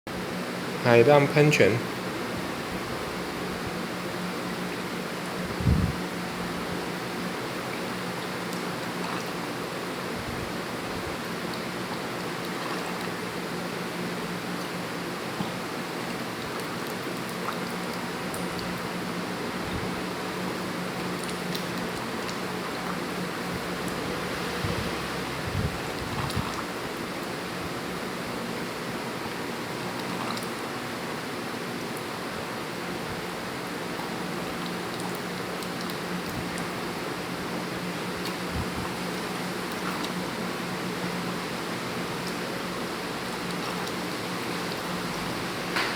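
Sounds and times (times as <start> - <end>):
seawater rushing from waves: 23.4 - 26.8.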